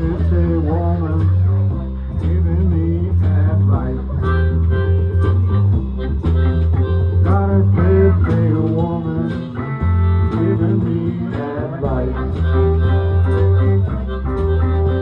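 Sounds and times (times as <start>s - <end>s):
person singing: 0.0s - 5.0s, 6.9s - 13.9s
plucked guitar: 0.0s - 15.0s
steady bass line: 0.0s - 15.0s.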